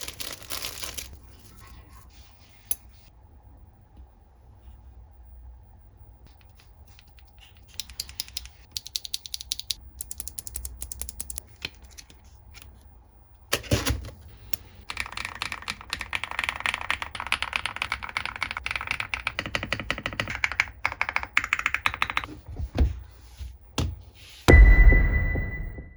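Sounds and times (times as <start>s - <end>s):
mechanical keyboard typing: 7.7s - 11.4s, 14.8s - 22.3s.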